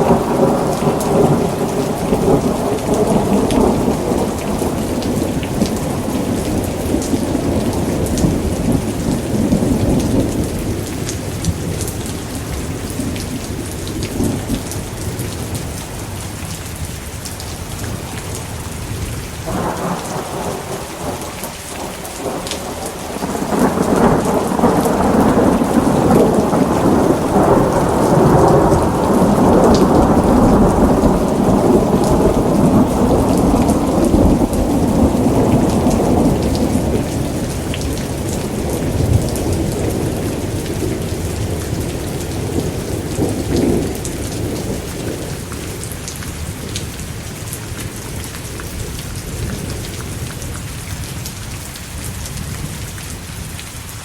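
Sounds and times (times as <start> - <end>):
rolling thunder: 0.0 - 16.9, 17.7 - 49.9
heavy rain: 0.0 - 54.0.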